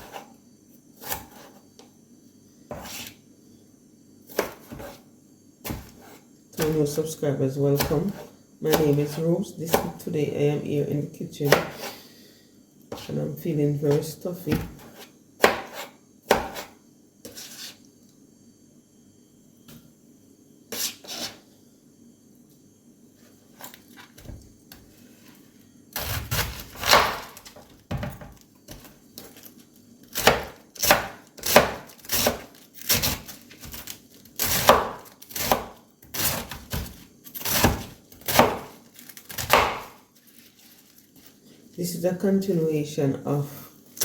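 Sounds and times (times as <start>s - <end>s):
knife chopping on wooden board: 4.3s - 5.0s, 7.8s - 10.0s, 11.5s - 11.9s, 13.9s - 16.7s, 26.0s - 28.1s, 30.2s - 33.8s, 34.4s - 38.7s, 39.4s - 40.0s.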